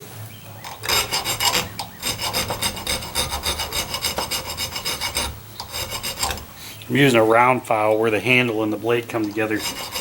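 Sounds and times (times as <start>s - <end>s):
hand file rasping on steel: 0.7s - 6.6s, 9.2s - 10.0s.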